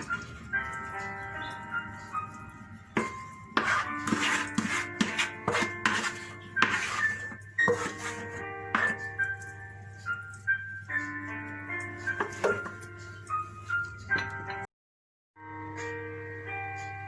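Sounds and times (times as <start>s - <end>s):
soft background music: 0.0s - 14.7s, 15.4s - 17.0s
utensils and dishes clinking: 0.0s - 14.7s.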